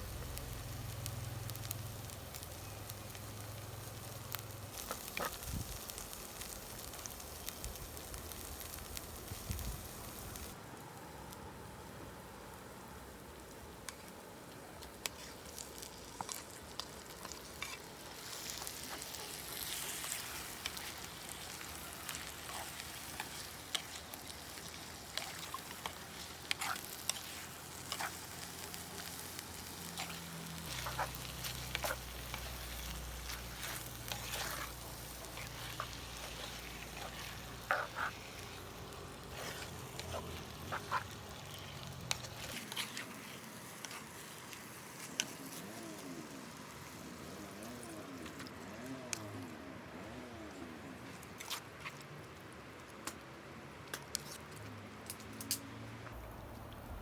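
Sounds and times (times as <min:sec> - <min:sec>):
food sizzling in a pan: 0:00.0 - 0:10.6, 0:15.0 - 0:47.4
utensil clicking and scraping: 0:15.0 - 0:45.7
low hum: 0:56.1 - 0:57.0.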